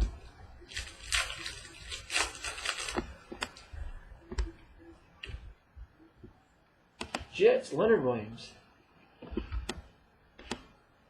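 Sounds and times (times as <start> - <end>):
trading cards rustling: 0.7 - 3.7.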